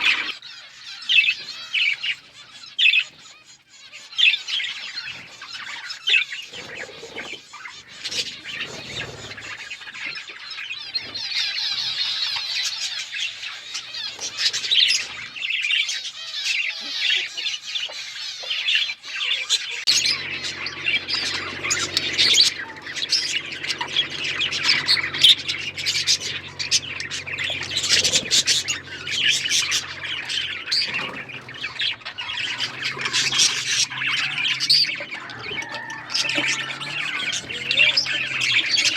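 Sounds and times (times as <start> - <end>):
budgerigars chattering: 0.0 - 38.9
low steady hum: 19.9 - 38.9.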